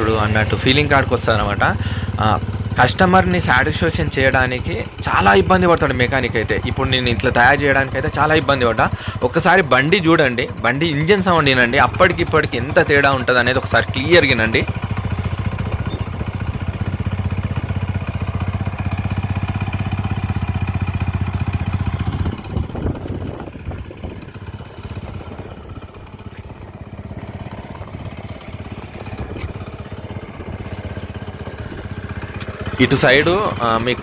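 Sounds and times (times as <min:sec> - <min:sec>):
engine knocks: 0:00.0 - 0:34.0
motorcycle engine idling: 0:00.0 - 0:34.0.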